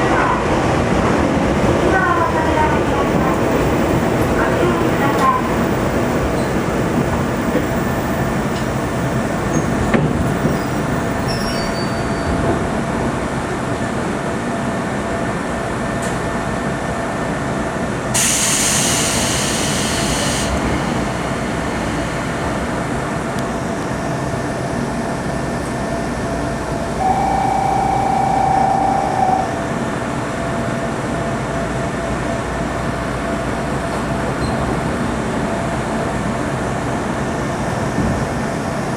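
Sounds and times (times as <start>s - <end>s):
train wheels rumbling on rail: 0.0s - 27.0s
short steady tone: 18.2s - 23.0s
air hiss: 18.2s - 23.3s.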